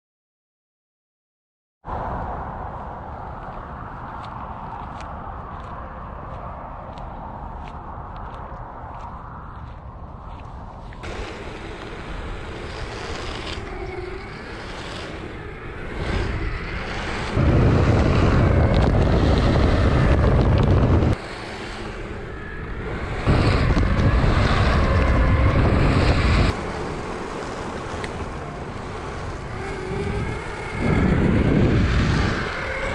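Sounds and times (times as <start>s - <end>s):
wind buffeting microphone: 1.8s - 32.9s
steady rushing noise: 1.9s - 32.9s.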